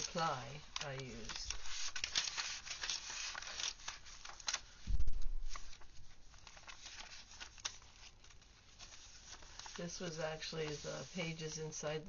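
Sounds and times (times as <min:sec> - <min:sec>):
paper pages rustling: 0:00.0 - 0:12.0
soft low thump: 0:04.9 - 0:05.6.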